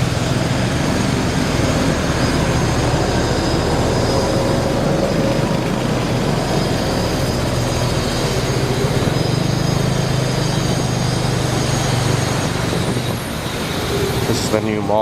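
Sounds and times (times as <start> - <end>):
motorbike engine humming: 0.0 - 15.0
wind buffeting microphone: 0.0 - 15.0.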